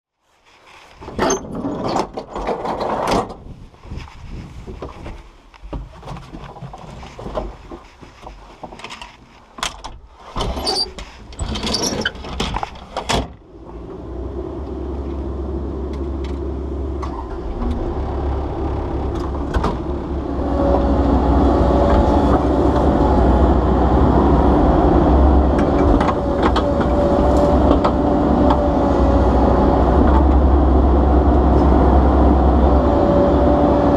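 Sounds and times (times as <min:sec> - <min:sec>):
knocks and clatters: 0:01.1 - 0:03.4, 0:04.7 - 0:13.4, 0:25.5 - 0:28.7
excavator diesel engine rumble: 0:10.6 - 0:33.9.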